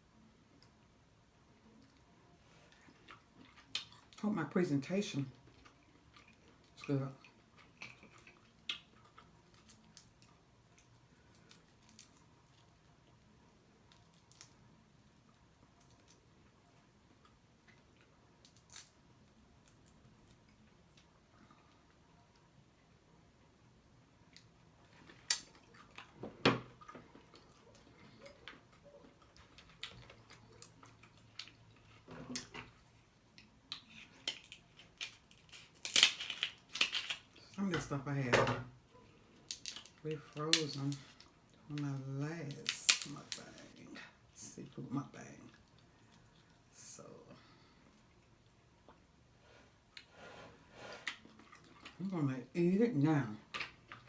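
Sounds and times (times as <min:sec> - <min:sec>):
chewing and mouth smacking: 0:02.7 - 0:04.2, 0:05.4 - 0:13.3, 0:24.3 - 0:26.2, 0:26.8 - 0:32.5, 0:51.1 - 0:52.0
shell crackling: 0:33.6 - 0:37.4, 0:39.5 - 0:41.2, 0:42.5 - 0:43.7.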